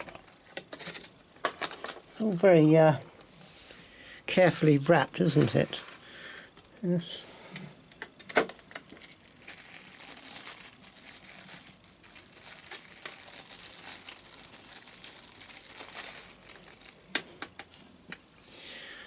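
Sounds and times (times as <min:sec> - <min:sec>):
packaging crinkling and rustling: 0:00.0 - 0:02.7, 0:05.2 - 0:06.1, 0:08.1 - 0:17.8.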